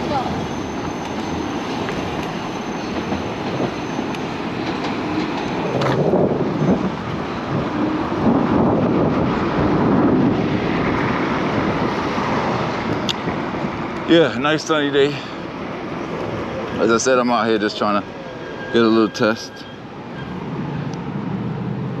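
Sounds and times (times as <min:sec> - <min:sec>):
road and wind rumble: 0:00.0 - 0:22.0.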